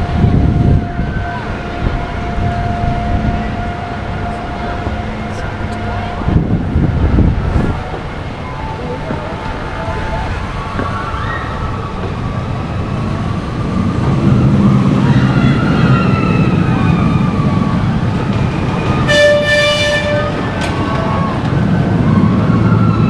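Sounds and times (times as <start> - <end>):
ride rumbling on rails: 0.0 - 23.0
faint wavering squeals: 7.7 - 19.6
horn-like tone: 19.0 - 20.5.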